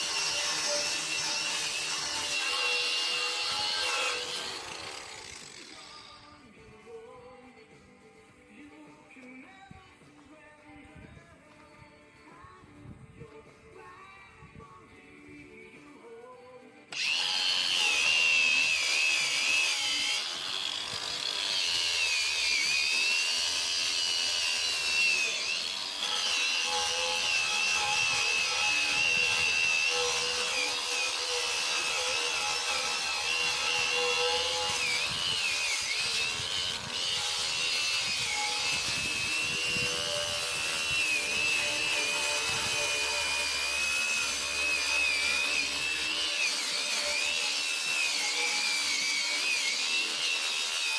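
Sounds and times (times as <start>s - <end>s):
angle grinder whining: 0.0s - 6.4s, 16.9s - 50.9s.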